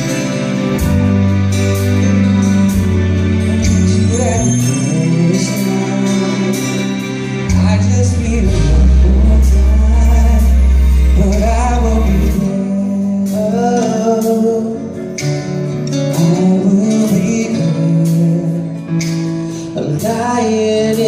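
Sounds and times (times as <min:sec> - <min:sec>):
guitar: 0:00.0 - 0:21.0
person singing long notes: 0:07.5 - 0:14.8
deep bass note: 0:07.6 - 0:12.7.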